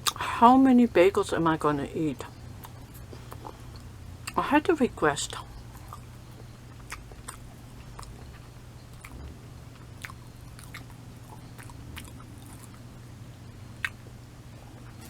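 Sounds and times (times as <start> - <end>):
low hum: 0.2 - 15.0
chewing crunchy bread: 2.2 - 4.4, 5.4 - 12.9, 13.8 - 15.0.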